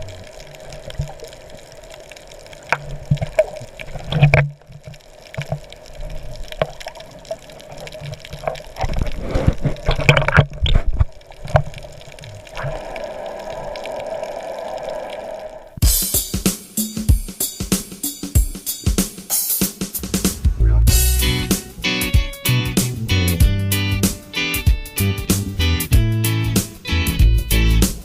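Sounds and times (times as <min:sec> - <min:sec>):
water sloshing and bubbling: 0:00.0 - 0:15.8.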